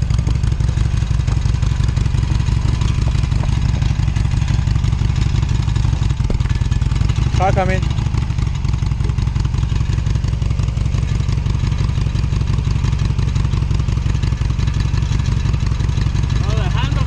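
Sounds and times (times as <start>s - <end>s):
motorcycle engine running steadily: 0.0s - 17.0s.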